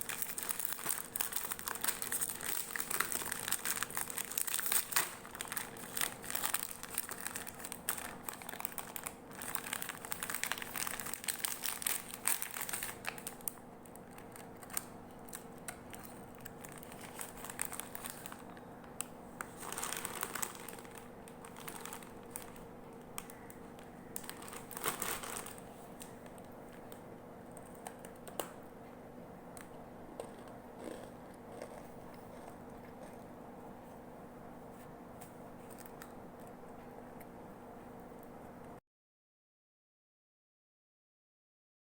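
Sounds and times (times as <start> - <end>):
cookie packaging crinkling: 0.0 - 28.6, 29.6 - 33.3, 35.2 - 36.6.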